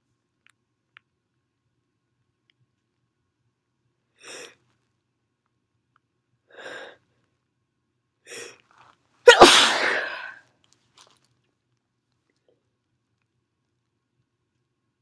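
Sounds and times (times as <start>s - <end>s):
breathy intakes before sneeze: 9.3s - 10.4s
loud human sneeze: 9.3s - 10.4s.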